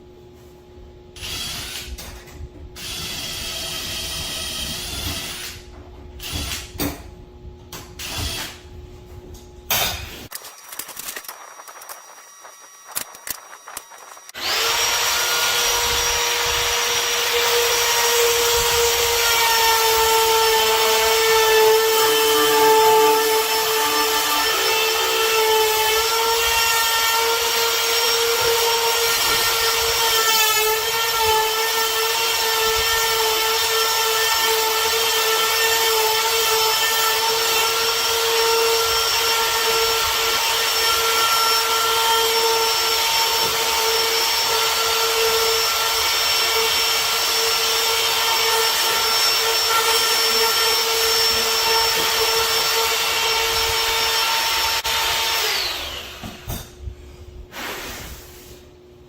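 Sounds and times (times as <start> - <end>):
power tool motor whining: 10.7 - 32.8.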